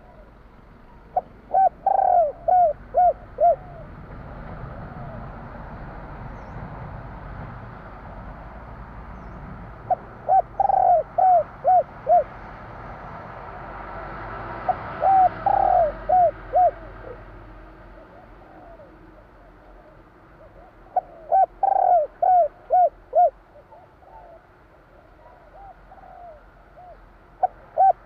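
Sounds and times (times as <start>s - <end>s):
dove cooing: 0.0s - 5.5s, 9.8s - 12.4s, 14.6s - 17.3s, 17.9s - 28.0s.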